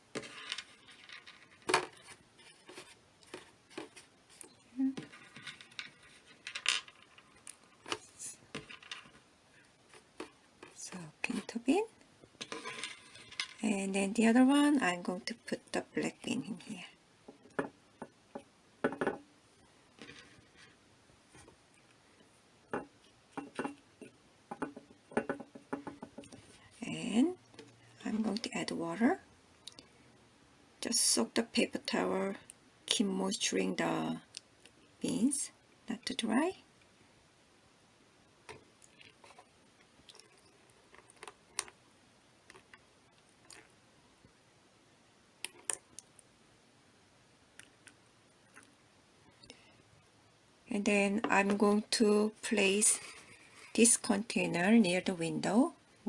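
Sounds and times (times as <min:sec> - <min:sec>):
dry beans dropping into container: 0:05.0 - 0:09.2.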